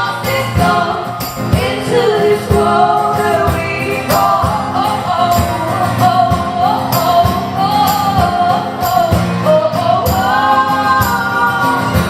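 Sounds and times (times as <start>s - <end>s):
live band accompaniment: 0.0s - 12.0s.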